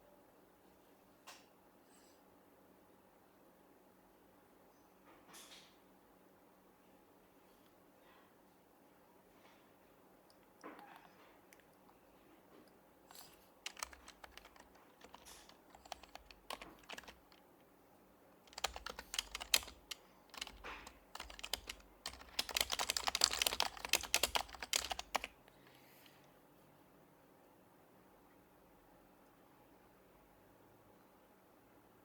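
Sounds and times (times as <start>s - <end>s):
keyboard typing: 13.1s - 17.4s, 18.5s - 25.4s.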